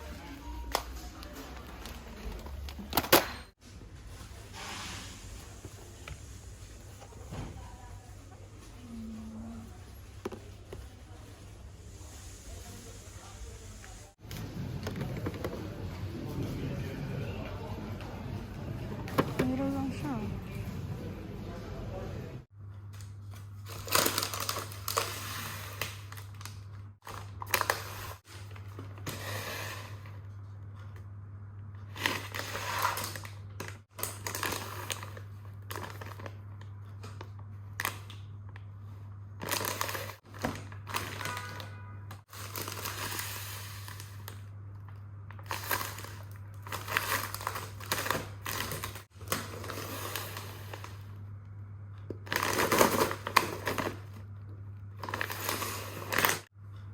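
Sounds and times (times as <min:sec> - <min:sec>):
plastic bags crinkling: 0:23.6 - 0:28.6, 0:32.0 - 0:36.4, 0:39.4 - 0:44.4, 0:45.4 - 0:51.1, 0:52.3 - 0:54.3, 0:55.0 - 0:56.5.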